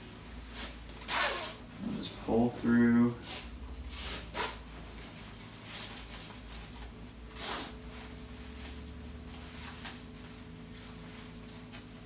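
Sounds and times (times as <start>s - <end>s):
faint steady hum: 0.0s - 12.0s
strap webbing rustling swish: 0.2s - 1.8s, 3.2s - 11.4s
strap webbing scraping: 0.4s - 1.7s, 3.2s - 6.7s, 7.3s - 8.8s.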